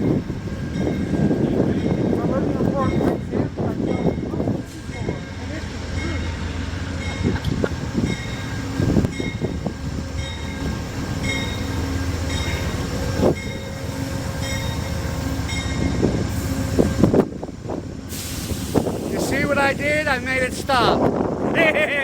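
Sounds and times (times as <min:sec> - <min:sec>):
crossing bell dinging: 0:00.0 - 0:16.9
diesel locomotive rumbling: 0:00.0 - 0:22.0.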